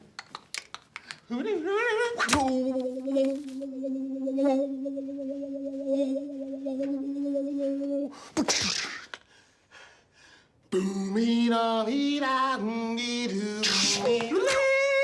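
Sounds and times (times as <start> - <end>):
pitched vocal tones: 1.2 - 9.1, 10.7 - 15.0
hummed vocal drone: 1.3 - 8.2, 10.7 - 15.0
vocal hissing burst: 13.6 - 14.1.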